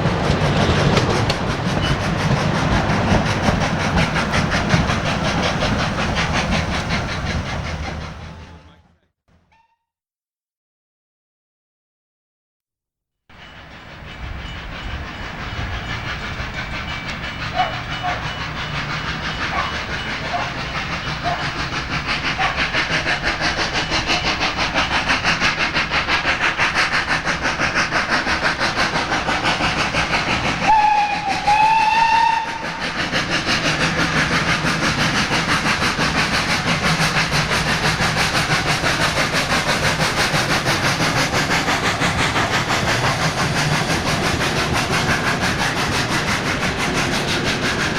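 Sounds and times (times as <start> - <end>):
steam locomotive exhaust beats: 0.0 - 8.8, 13.4 - 47.9
steam whistle blast: 30.7 - 32.8.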